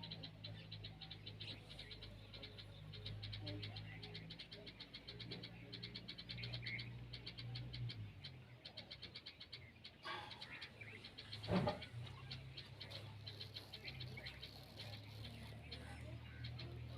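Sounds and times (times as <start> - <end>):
chorus of high chirps: 0.0 - 16.9.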